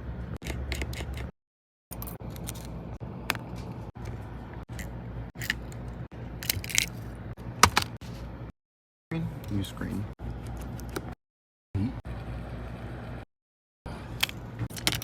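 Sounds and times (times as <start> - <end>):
steady low hum: 1.9 - 8.5.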